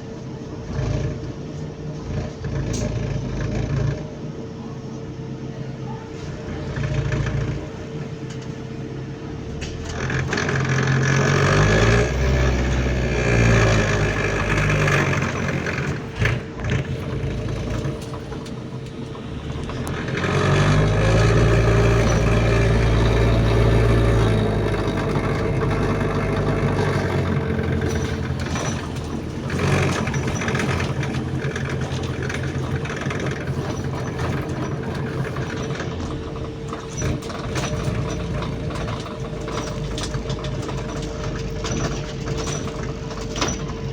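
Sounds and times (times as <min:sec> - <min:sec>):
bus engine pulling: 0:00.0 - 0:43.9.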